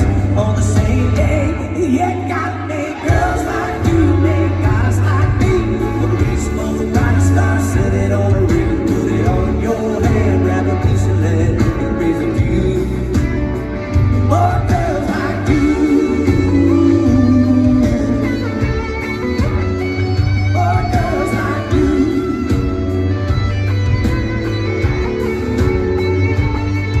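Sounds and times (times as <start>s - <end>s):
person singing: 0.0s - 18.7s, 20.5s - 23.1s
country-rock band playing: 0.0s - 27.0s.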